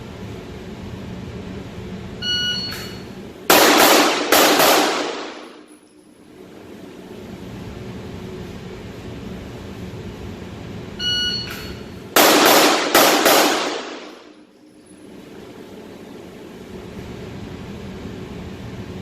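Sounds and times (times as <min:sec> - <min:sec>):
shot timer beep: 0:02.2 - 0:03.0, 0:11.0 - 0:11.8
pistol shots: 0:03.5 - 0:05.6, 0:12.2 - 0:14.3.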